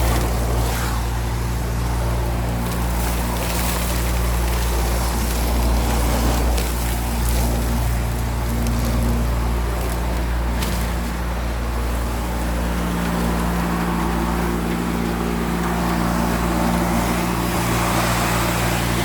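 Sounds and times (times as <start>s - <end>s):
vacuum cleaner running: 11.4s - 19.0s.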